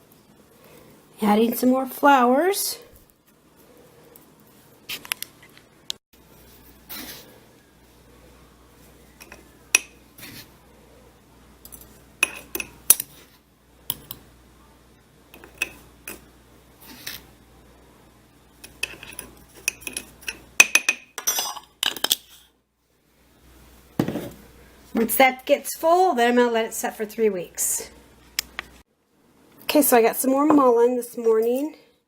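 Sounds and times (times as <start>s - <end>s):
utensil clinking against glass jar: 18.6s - 22.1s.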